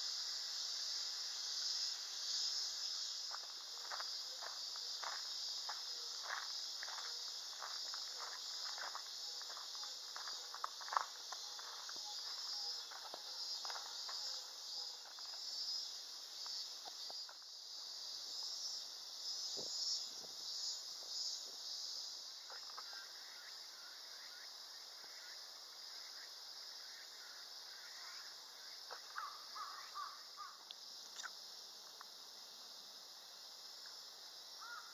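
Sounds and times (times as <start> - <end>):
insects chirping: 0.0 - 34.9.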